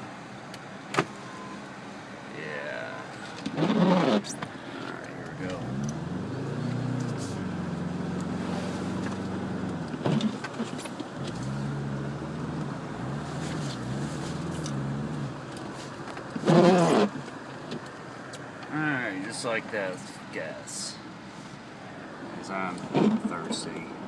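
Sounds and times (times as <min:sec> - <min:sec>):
car engine revving: 0:02.7 - 0:15.7, 0:16.3 - 0:17.2.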